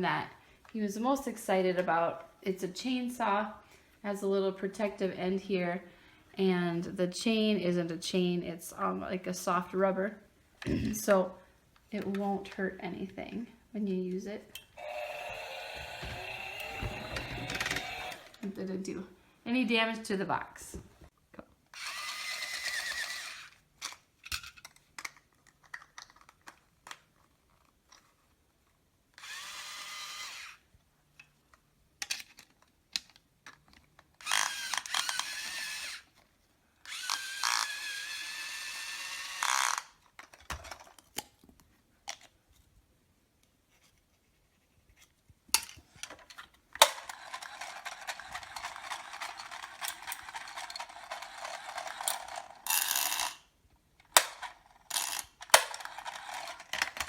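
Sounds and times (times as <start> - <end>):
toy chainsaw motor buzzing: 14.8 - 18.4, 21.7 - 23.6, 29.2 - 30.6, 34.2 - 36.1, 36.8 - 40.0, 46.8 - 53.4, 54.2 - 57.0.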